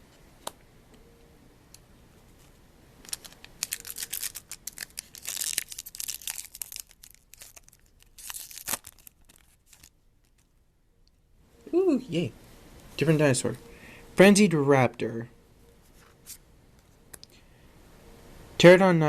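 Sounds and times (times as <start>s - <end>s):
foil wrapper tearing and crinkling: 3.0s - 10.5s.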